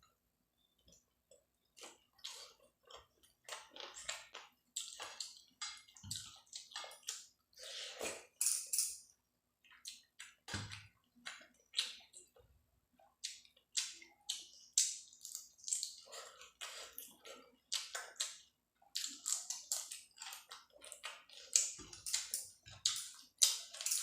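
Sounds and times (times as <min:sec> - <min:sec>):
wet chewing and lip smacking: 0:00.8 - 0:07.4, 0:13.0 - 0:24.0.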